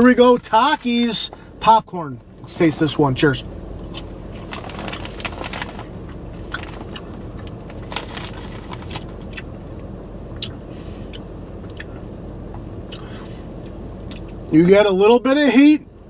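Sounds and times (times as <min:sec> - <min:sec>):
steady low hum: 0:00.0 - 0:16.0
person chewing popcorn: 0:03.8 - 0:14.5.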